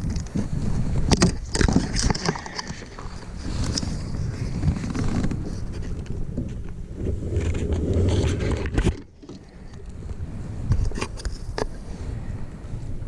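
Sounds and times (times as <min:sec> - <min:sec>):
wind rumbling on microphone: 0:00.0 - 0:13.0.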